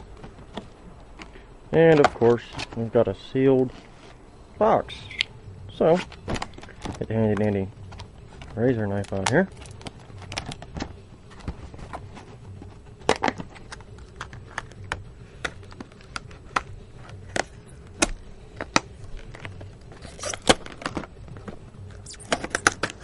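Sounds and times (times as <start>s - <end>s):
hands handling cardboard box: 5.7s - 23.0s.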